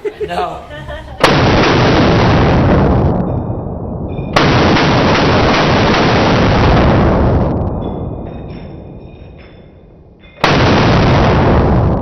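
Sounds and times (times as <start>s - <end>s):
slowed rifle shots booming: 1.2s - 12.0s.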